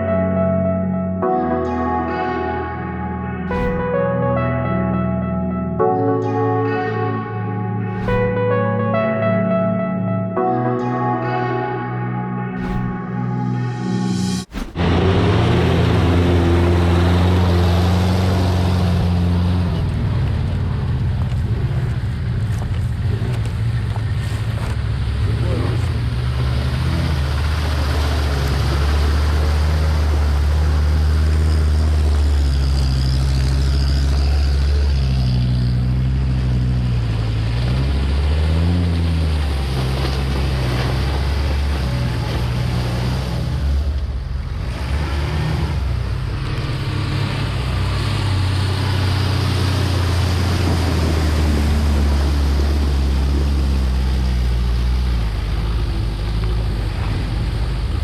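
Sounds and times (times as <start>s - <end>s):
vehicle engine revving under load: 14.4s - 58.0s.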